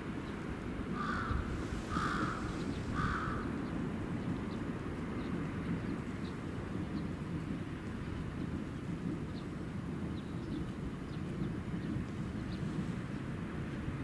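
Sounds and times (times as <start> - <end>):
bird calling: 1.0 - 3.5.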